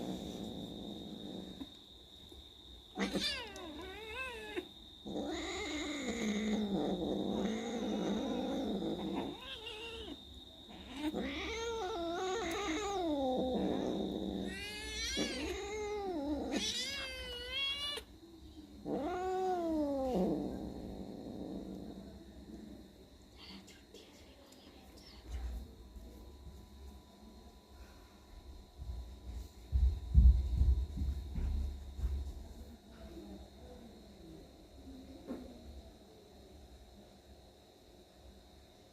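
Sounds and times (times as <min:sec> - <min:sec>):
faint high-pitched whine: 0:00.0 - 0:38.9
cats yowling: 0:02.9 - 0:18.1, 0:18.8 - 0:21.9.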